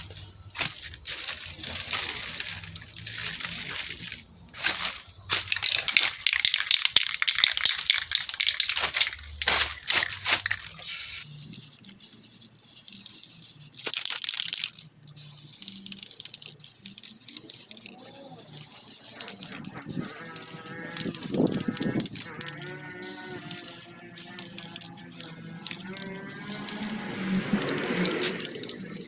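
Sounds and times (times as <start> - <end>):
spray hissing onto wood: 10.8 - 14.0, 15.2 - 29.0.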